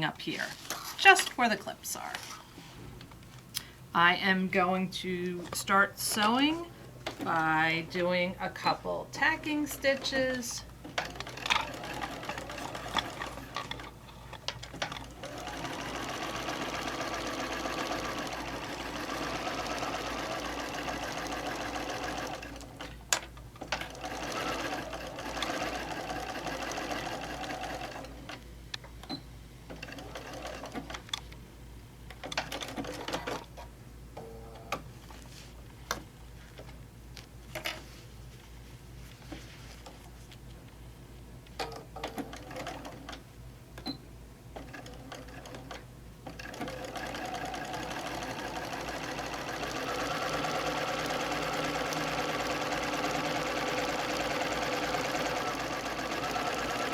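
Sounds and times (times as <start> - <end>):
sewing machine stitching: 10.1 - 23.0, 23.6 - 28.4, 29.7 - 31.1, 44.6 - 56.9.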